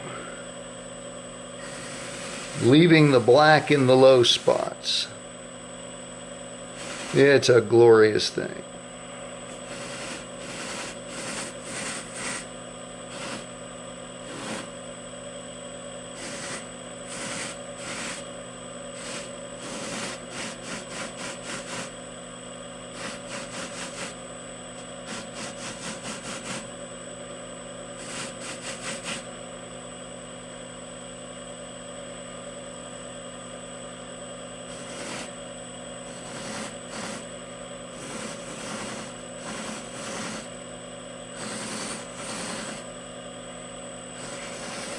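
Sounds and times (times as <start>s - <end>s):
buffer motor humming with whine: 0.0s - 44.9s
pipe bowl rubbing on buffing wheel: 1.6s - 4.7s, 6.7s - 7.6s, 9.5s - 12.5s, 13.1s - 13.5s, 14.2s - 14.8s, 16.1s - 18.3s, 18.9s - 22.0s, 22.9s - 24.2s, 25.0s - 26.7s, 28.0s - 29.3s, 34.7s - 35.4s, 36.0s - 37.3s, 37.9s - 40.6s, 41.3s - 42.9s, 44.2s - 44.9s.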